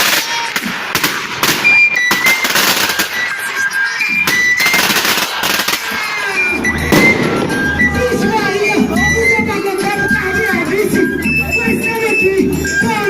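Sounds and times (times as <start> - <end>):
firecrackers cracking: 0.0 - 9.0
music: 0.0 - 13.0
high held notes: 1.4 - 13.0.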